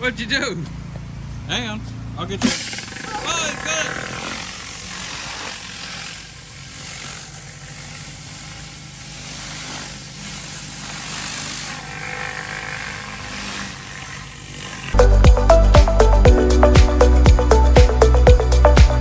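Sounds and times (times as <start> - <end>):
pressure washer engine drone: 0.0 - 19.0
water jet hissing: 2.4 - 11.9.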